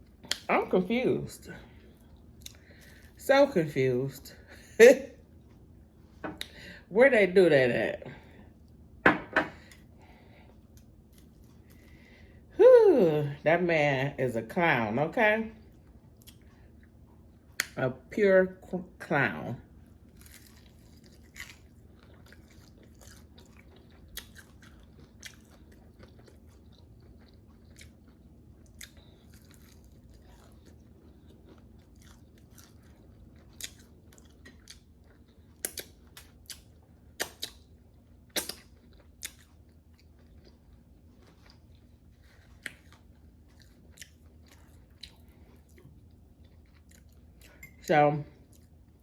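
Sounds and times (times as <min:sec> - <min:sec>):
steady low hum: 0:00.0 - 0:49.0
chewing crispy chicken: 0:19.8 - 0:47.6, 0:48.3 - 0:49.0.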